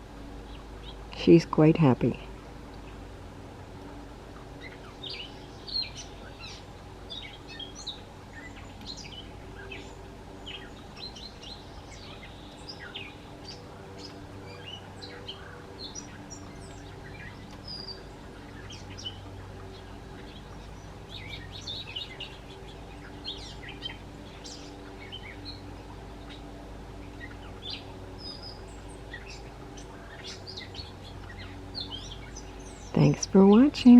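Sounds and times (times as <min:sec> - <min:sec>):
songbirds chirping and singing: 0:00.0 - 0:33.9
steady low hum: 0:00.0 - 0:33.9.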